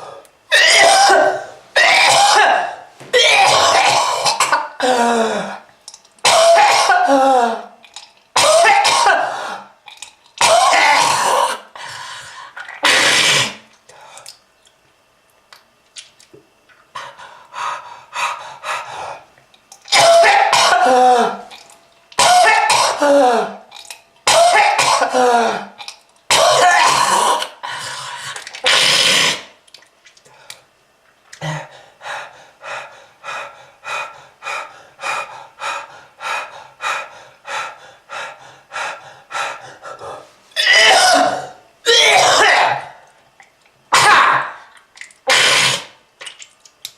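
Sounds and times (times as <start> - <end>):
person coughing hard: 0.5 - 5.6, 6.2 - 7.7, 8.4 - 9.7, 10.4 - 11.7, 12.8 - 13.6, 19.9 - 21.5, 22.2 - 23.6, 24.3 - 27.6, 40.6 - 43.0, 43.9 - 44.6, 45.3 - 45.9.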